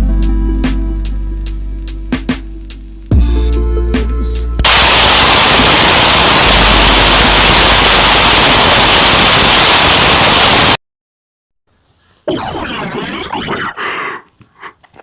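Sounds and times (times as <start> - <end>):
music: 0.0 - 4.6
loud static hiss: 4.6 - 10.8.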